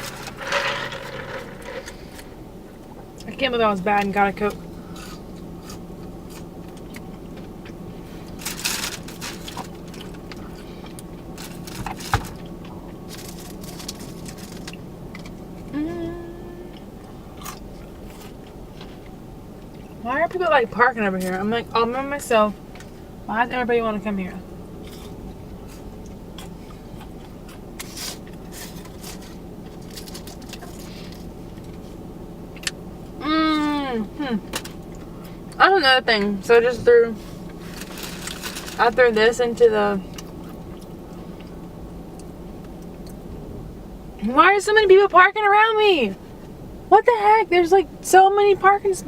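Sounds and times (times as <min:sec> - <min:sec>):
food wrapper rustle and crunch: 0:00.0 - 0:02.4, 0:04.8 - 0:15.6, 0:17.1 - 0:19.1, 0:24.8 - 0:32.0, 0:37.2 - 0:39.0
air conditioning running: 0:00.0 - 0:49.0
car cabin hum: 0:00.0 - 0:49.0.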